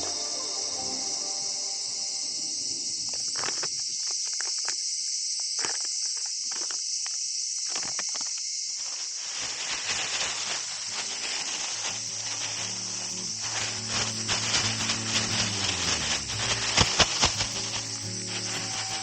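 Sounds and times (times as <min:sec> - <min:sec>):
insects chirring: 0:00.0 - 0:19.0.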